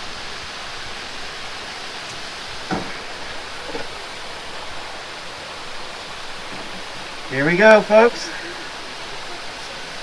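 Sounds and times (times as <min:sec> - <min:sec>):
water flowing: 0:00.0 - 0:10.0
short knocks: 0:02.1 - 0:04.0.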